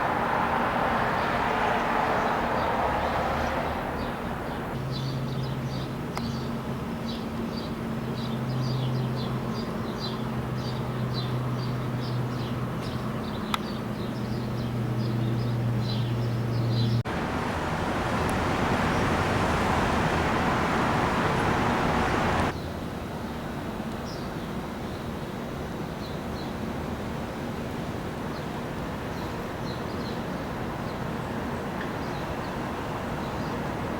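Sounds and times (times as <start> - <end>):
loud rushing noise: 17.1 - 22.5.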